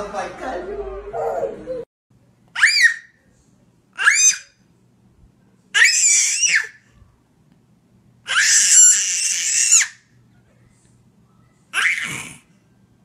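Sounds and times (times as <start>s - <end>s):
baby squealing: 2.6s - 3.1s, 4.0s - 4.6s, 5.8s - 6.8s, 8.3s - 10.0s, 11.8s - 12.4s.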